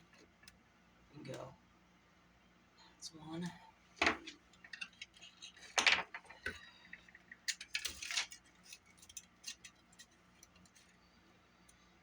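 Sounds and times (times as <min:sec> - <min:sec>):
small tools clicking and tapping: 0:04.6 - 0:10.9.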